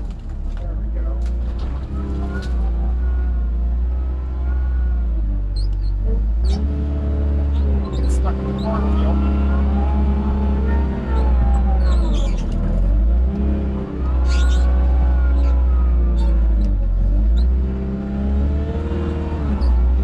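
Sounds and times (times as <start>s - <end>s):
tractor diesel engine under load: 0.0s - 20.0s.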